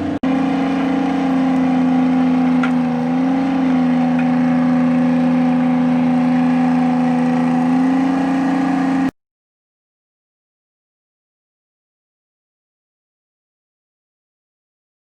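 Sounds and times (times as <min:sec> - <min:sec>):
engine running: 0:00.0 - 0:09.1.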